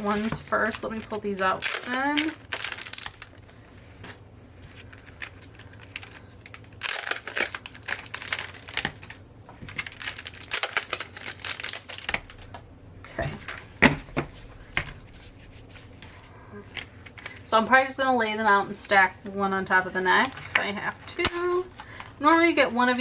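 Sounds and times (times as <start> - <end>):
packaging crinkling and rustling: 0.0 - 17.5.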